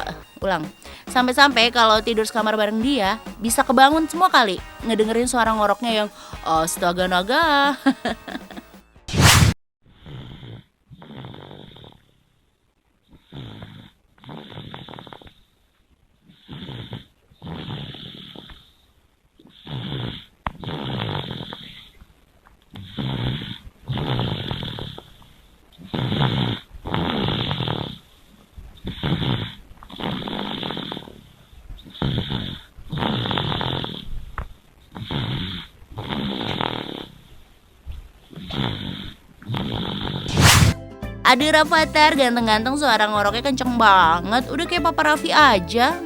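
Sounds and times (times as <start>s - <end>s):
brief loud burst: 9.1s - 9.6s, 40.3s - 40.8s
child snoring: 10.0s - 12.1s, 13.1s - 15.4s, 16.3s - 18.8s, 19.4s - 21.9s, 22.8s - 25.2s, 25.8s - 28.1s, 28.8s - 31.3s, 31.9s - 34.2s, 34.9s - 37.3s, 38.3s - 40.8s.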